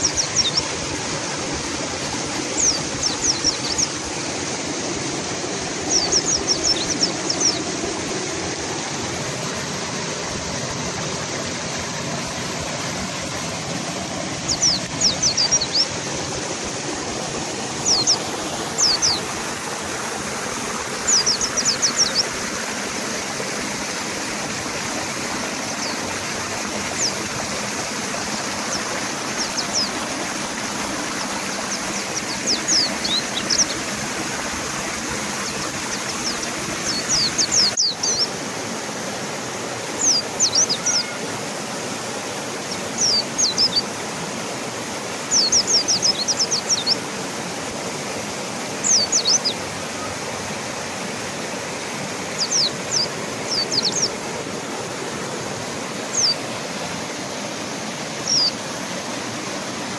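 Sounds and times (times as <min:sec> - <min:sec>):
bird chirping: 0:00.0 - 0:00.7, 0:02.6 - 0:04.0, 0:05.9 - 0:07.7, 0:14.4 - 0:15.9, 0:17.8 - 0:19.3, 0:21.0 - 0:22.4, 0:31.2 - 0:33.8, 0:45.3 - 0:47.0, 0:52.4 - 0:54.2, 0:56.1 - 0:56.4, 0:58.2 - 0:58.6
river water rushing: 0:00.0 - 0:59.9.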